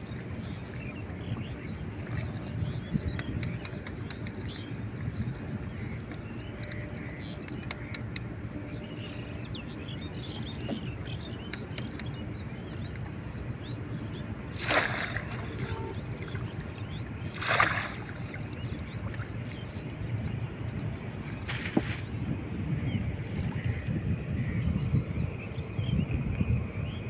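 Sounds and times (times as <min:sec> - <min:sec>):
small birds chirping: 0:00.0 - 0:27.0
steady low rumble: 0:00.0 - 0:27.0
river water splashing: 0:14.3 - 0:22.2.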